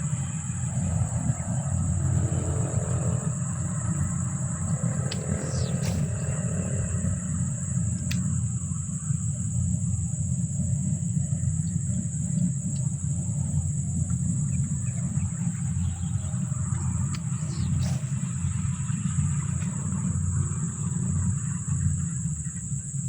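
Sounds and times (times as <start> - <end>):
wind buffeting microphone: 0.0 - 23.0
faint clicks: 3.9 - 6.6, 7.9 - 8.4, 11.6 - 13.0.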